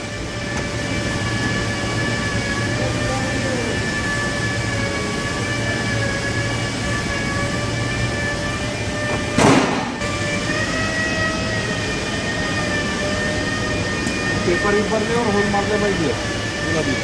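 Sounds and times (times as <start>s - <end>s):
machine humming: 0.0s - 17.0s
short loud noise burst: 9.4s - 10.2s.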